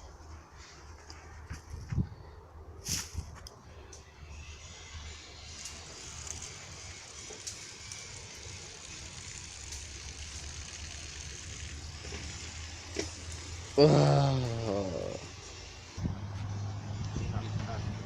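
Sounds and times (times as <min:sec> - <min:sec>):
even hiss: 0:04.0 - 0:18.0.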